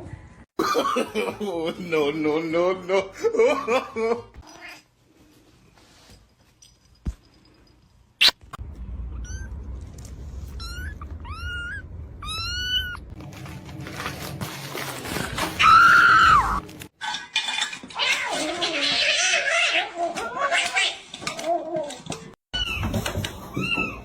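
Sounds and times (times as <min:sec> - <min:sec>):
cat meowing: 0:10.6 - 0:13.1.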